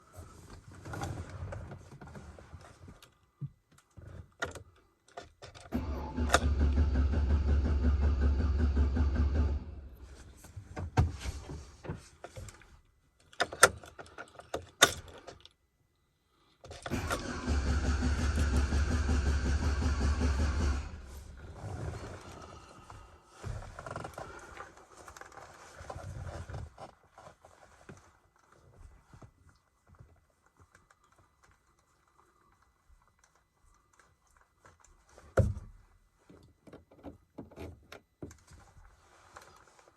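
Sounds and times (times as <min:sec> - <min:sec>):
starter cranking engine: 0:05.7 - 0:10.2, 0:16.9 - 0:24.3
ignition clicking: 0:05.8 - 0:10.0, 0:16.9 - 0:21.7.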